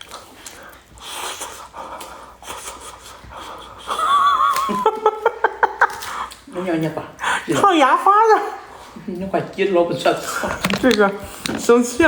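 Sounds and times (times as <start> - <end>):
dog panting: 0.6 - 4.0.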